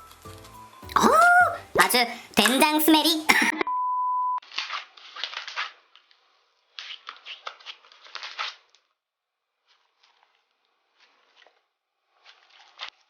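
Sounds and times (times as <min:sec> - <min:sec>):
slime squished by hand: 0:04.5 - 0:08.7.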